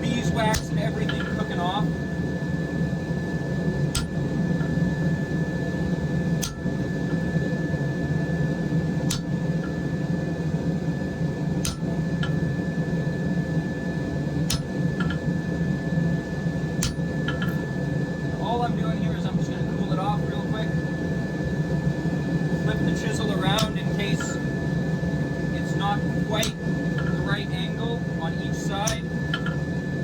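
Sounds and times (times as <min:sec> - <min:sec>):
forge rushing hum: 0:00.0 - 0:30.0
hammer striking chisel on iron: 0:00.4 - 0:01.6, 0:03.9 - 0:04.9, 0:06.4 - 0:07.3, 0:09.1 - 0:09.8, 0:11.6 - 0:12.4, 0:14.5 - 0:15.3, 0:16.8 - 0:17.6, 0:23.5 - 0:24.5, 0:26.4 - 0:27.3, 0:28.8 - 0:29.6.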